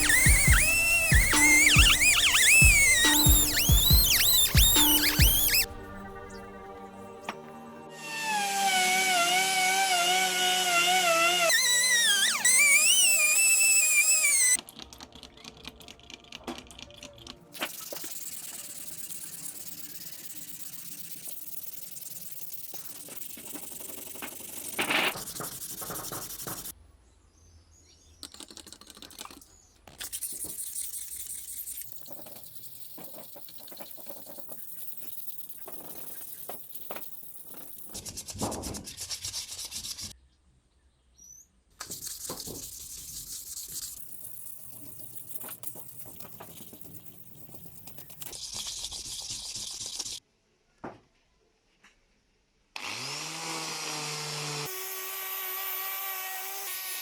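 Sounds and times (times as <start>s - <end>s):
hand sanding metal parts: 0.0s - 5.8s, 8.8s - 14.6s, 18.0s - 26.7s, 30.0s - 40.1s, 41.8s - 50.2s.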